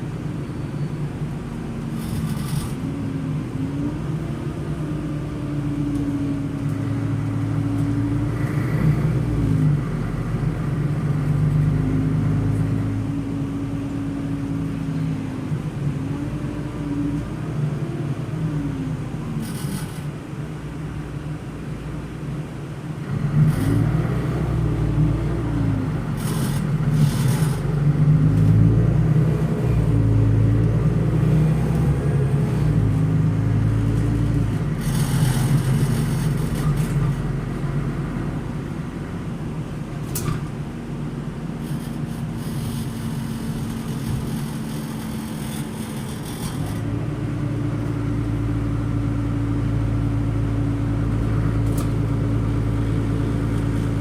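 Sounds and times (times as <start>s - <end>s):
bus diesel engine: 0.0s - 54.0s.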